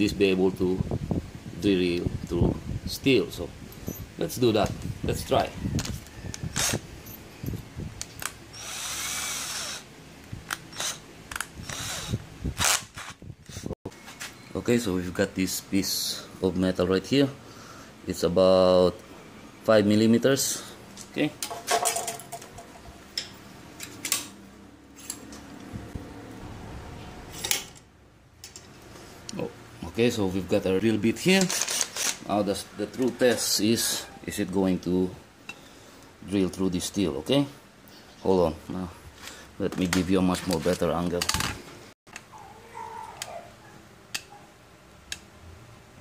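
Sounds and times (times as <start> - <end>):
electric drill motor whining: 5.8 - 6.8, 8.5 - 9.9, 10.5 - 13.7
handling clicks and knocks: 21.0 - 24.4.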